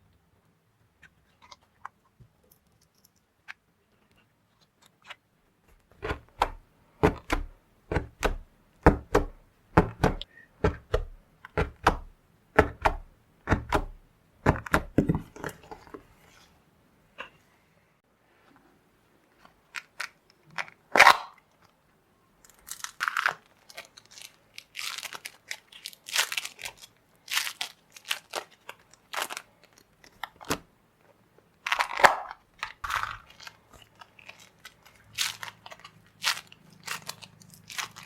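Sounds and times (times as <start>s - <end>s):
slime crackling and squelching: 22.5s - 30.6s, 31.7s - 38.0s.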